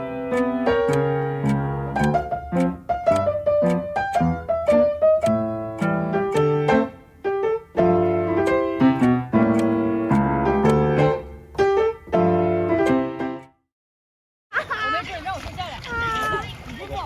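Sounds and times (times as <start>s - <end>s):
piano piece: 0.0s - 13.6s.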